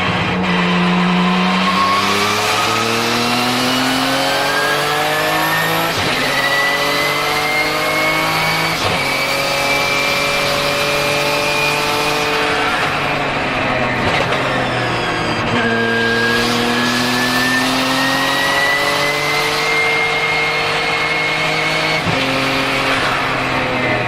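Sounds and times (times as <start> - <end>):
race car engine accelerating: 0.0 - 24.0
high turbo whistle: 1.3 - 8.5.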